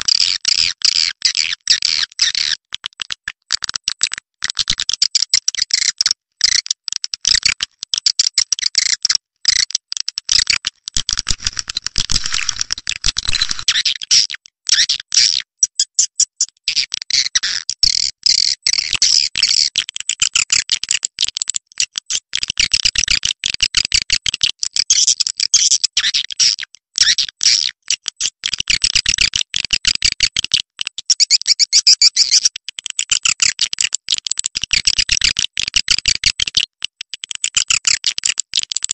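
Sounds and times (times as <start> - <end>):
evenly spaced clicks: 11.0 - 13.7.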